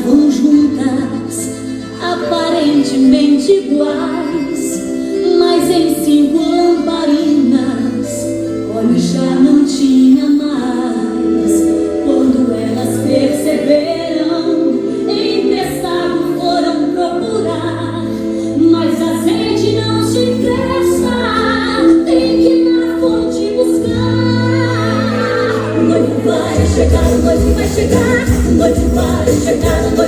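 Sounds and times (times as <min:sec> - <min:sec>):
group of voices singing gospel: 0:23.8 - 0:30.0.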